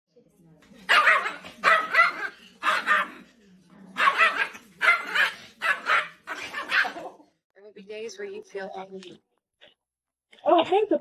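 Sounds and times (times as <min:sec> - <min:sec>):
dog barking: 0:00.9 - 0:03.3, 0:04.0 - 0:07.2.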